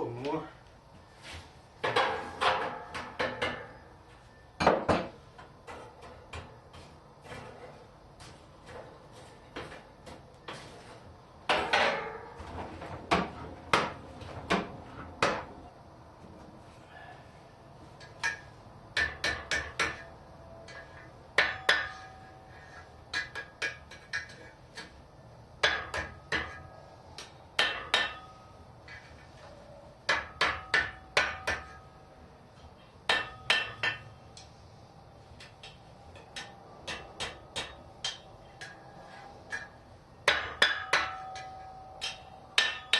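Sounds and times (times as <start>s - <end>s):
hammer striking steel on anvil: 18.0s - 20.1s, 21.4s - 22.3s, 25.6s - 26.6s, 27.2s - 28.6s, 30.1s - 31.9s, 33.1s - 34.2s, 35.4s - 38.8s, 39.5s - 42.9s.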